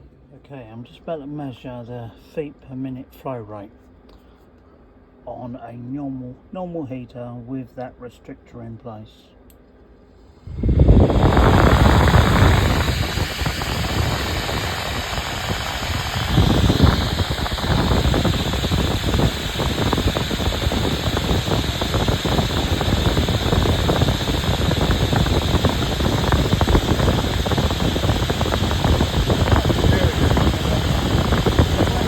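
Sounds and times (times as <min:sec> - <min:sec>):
heater fan rushing air: 0:09.4 - 0:32.0.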